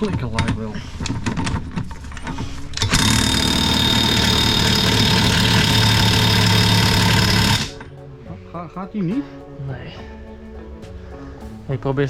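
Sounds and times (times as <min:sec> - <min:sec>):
impact wrench hammering: 0:02.3 - 0:07.9.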